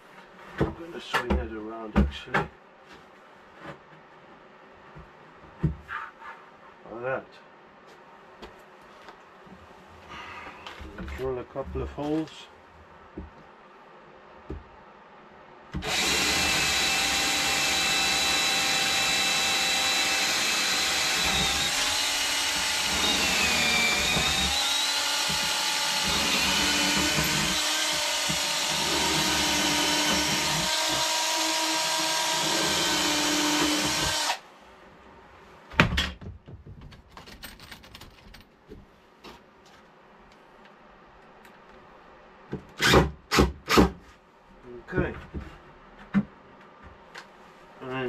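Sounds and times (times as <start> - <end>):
power drill drilling wood: 15.8 - 34.4.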